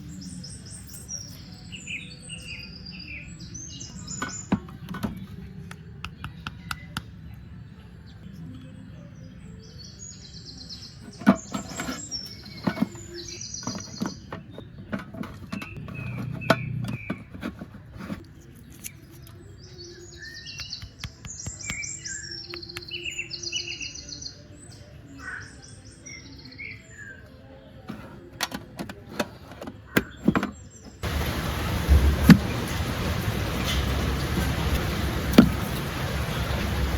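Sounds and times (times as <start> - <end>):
small birds chirping: 0.0 - 36.9
sharp clicks and knocks: 4.2 - 7.1, 11.1 - 18.9, 27.9 - 35.9
loud steady hiss: 31.0 - 36.9.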